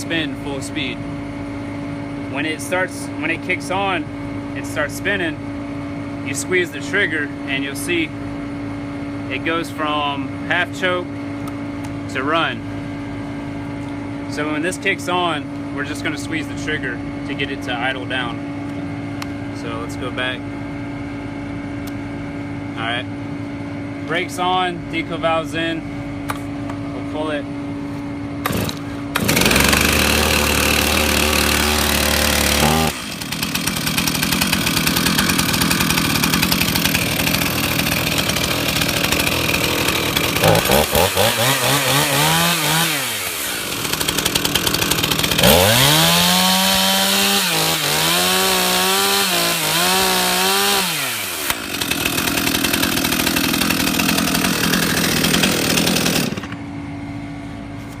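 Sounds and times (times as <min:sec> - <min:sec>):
starter cord pull: 0:28.4 - 0:29.4
chainsaw engine revving: 0:28.4 - 0:56.6.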